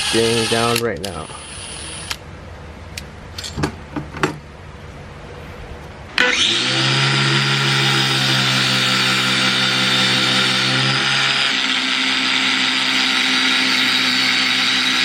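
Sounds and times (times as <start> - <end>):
electric grinder running: 6.2 - 15.0.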